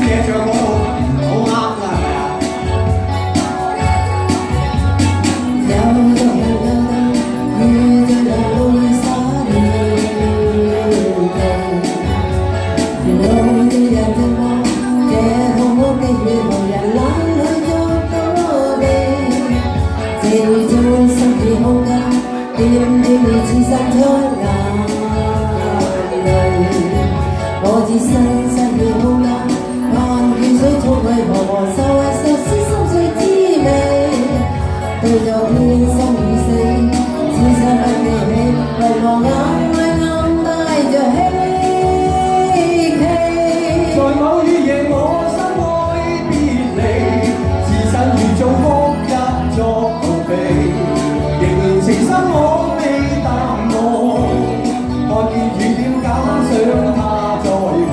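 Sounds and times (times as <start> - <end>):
instrumental backing with beat: 0.0 - 57.9
person singing: 0.0 - 57.9.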